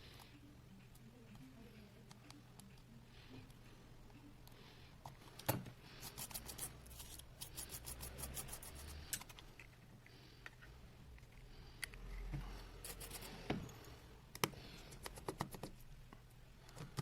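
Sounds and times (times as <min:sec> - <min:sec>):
repair tools clicking and scraping: 0:05.4 - 0:09.7.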